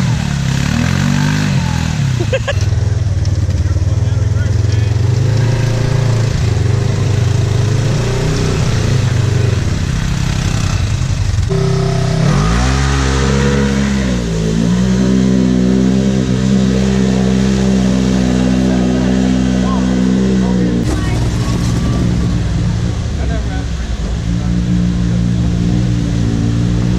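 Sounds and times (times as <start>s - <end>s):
off-road vehicle engine revving: 0.0s - 26.9s.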